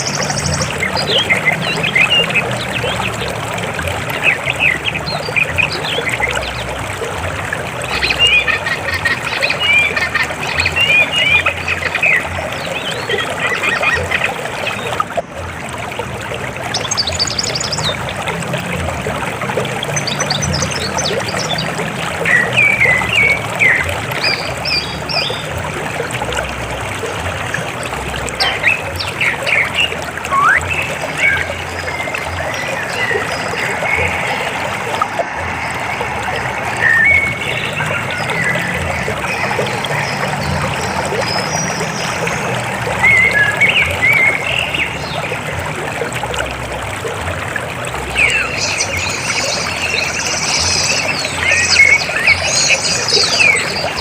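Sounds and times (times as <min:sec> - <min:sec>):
river water rushing: 0:00.0 - 0:54.0
bird chirps and calls: 0:30.3 - 0:31.6.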